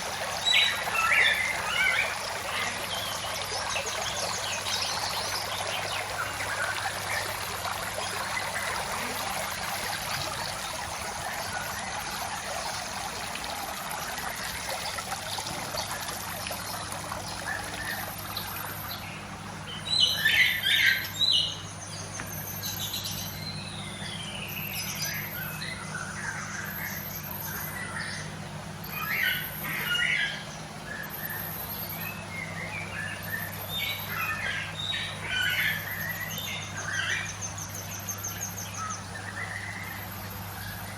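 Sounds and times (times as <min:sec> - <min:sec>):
bird chirping and whistling: 0:00.4 - 0:03.2, 0:19.7 - 0:28.3, 0:28.9 - 0:40.0.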